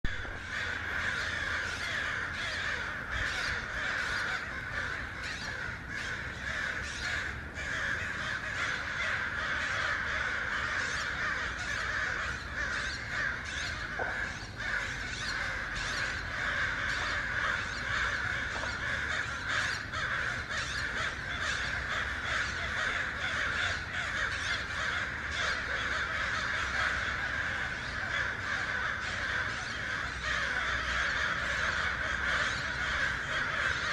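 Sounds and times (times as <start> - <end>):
crows cawing: 0.0 - 33.9.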